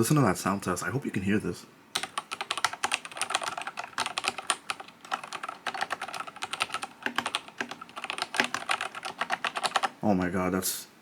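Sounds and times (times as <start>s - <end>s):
mechanical keyboard typing: 2.0s - 10.0s.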